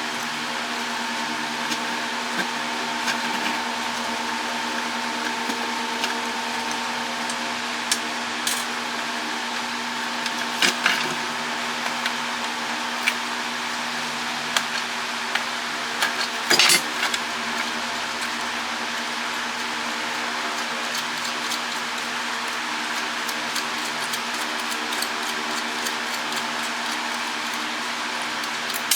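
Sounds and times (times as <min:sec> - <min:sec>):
steady background hum: 0:00.0 - 0:28.9
small parts clicking and clinking: 0:16.0 - 0:18.4.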